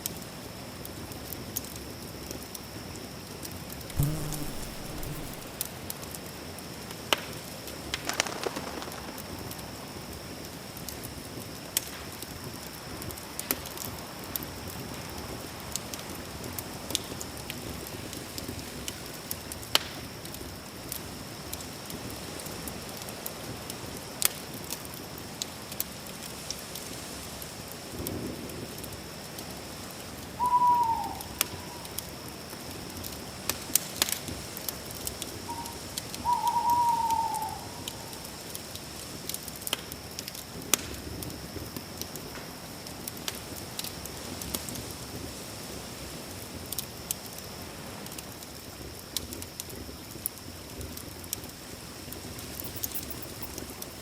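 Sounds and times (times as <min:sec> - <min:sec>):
animal call falling in pitch: 0:04.0 - 0:05.5, 0:08.0 - 0:09.6, 0:30.4 - 0:32.0, 0:35.5 - 0:38.3
campfire crackling and popping: 0:04.0 - 0:05.6, 0:07.1 - 0:11.0, 0:51.0 - 0:54.0.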